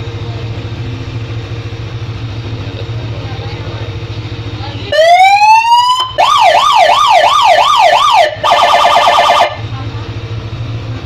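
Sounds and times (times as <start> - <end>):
electronic police siren: 4.9 - 9.6.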